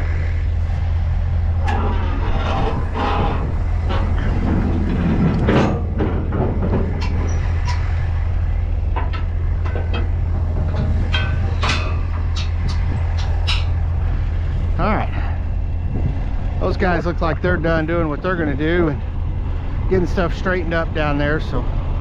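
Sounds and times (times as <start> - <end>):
heavy diesel machinery running: 0.0 - 22.0
metallic clanks and rattles: 1.5 - 21.7.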